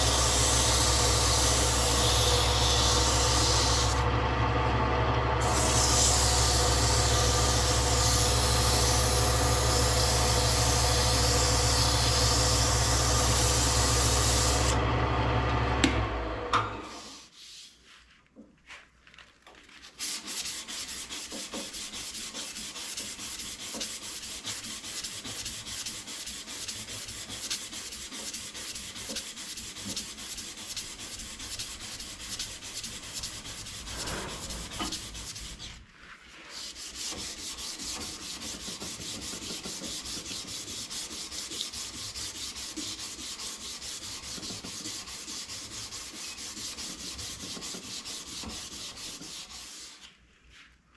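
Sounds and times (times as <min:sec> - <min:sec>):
power tool motor running: 0:00.0 - 0:16.2
sandpaper rubbing on wood: 0:05.4 - 0:06.7, 0:19.8 - 0:50.2.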